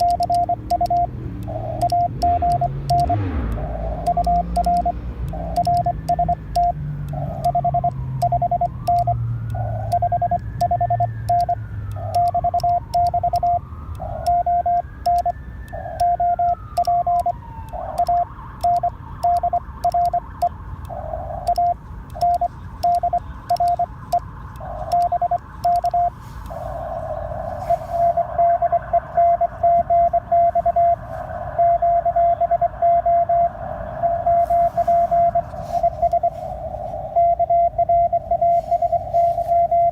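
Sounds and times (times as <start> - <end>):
keying clicks: 0.0 - 26.6
morse code tone: 0.0 - 39.9
faint gliding whistle: 25.0 - 39.9
radio hiss: 26.0 - 39.9.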